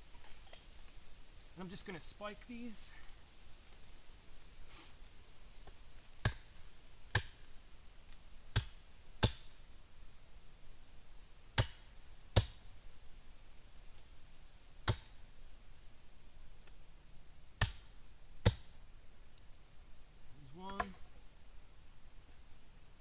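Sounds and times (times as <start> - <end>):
wooden stakes pounded into logs: 5.6 - 7.5, 8.5 - 9.6, 11.5 - 12.8, 14.8 - 15.2, 17.6 - 18.8, 20.6 - 21.2.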